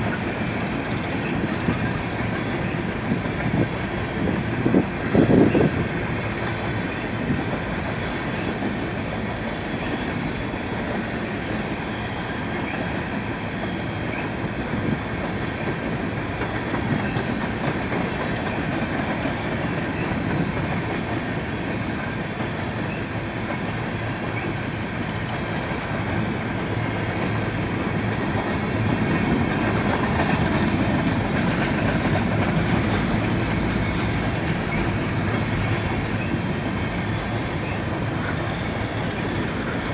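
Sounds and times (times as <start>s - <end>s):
train cars rumbling past: 0.0s - 39.9s
wheels clattering over rails: 28.0s - 36.6s
faint high wheel squeal: 37.1s - 39.8s.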